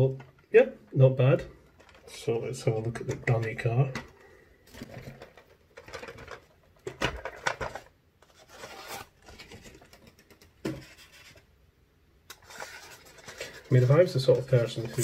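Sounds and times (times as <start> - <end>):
cardboard box scraping and rubbing: 8.4 - 9.2, 12.4 - 13.8.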